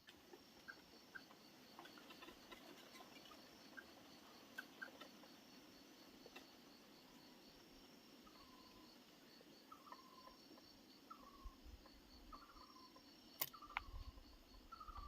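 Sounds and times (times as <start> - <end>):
faint cricket trill: 0.0 - 15.0
sharp clicks: 13.4 - 13.9.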